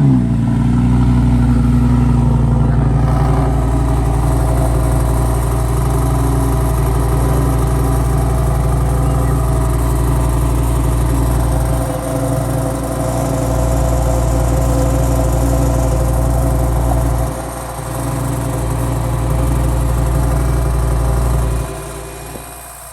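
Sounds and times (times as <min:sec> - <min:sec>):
car engine idling: 0:00.0 - 0:22.9.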